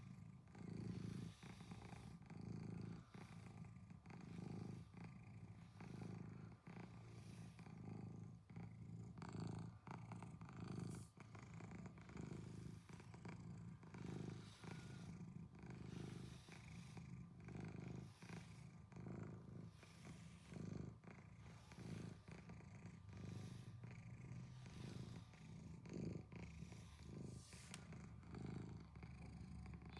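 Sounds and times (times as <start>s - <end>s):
cat purring: 0.0s - 29.9s.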